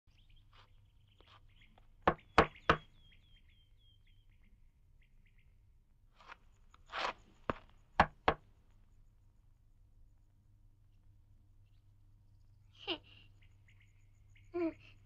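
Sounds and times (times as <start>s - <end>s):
small birds chirping: 0.1s - 15.0s
sharp knocks: 2.1s - 2.9s, 8.0s - 8.4s.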